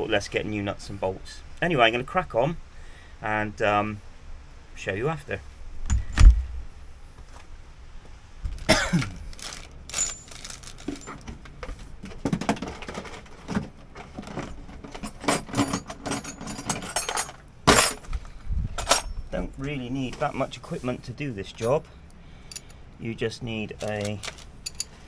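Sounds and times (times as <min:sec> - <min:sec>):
metal tools clinking and rattling: 0:08.6 - 0:20.3, 0:21.5 - 0:22.8, 0:23.6 - 0:25.0
wind rumble on microphone: 0:18.1 - 0:19.6.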